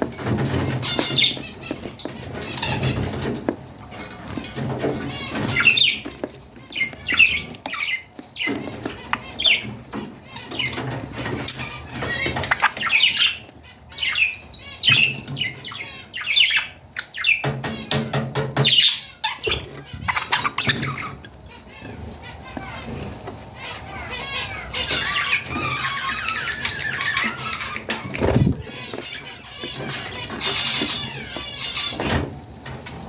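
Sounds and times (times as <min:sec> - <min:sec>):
budgerigar chicks squawking: 0:00.0 - 0:32.2
wings fluttering: 0:19.4 - 0:32.2.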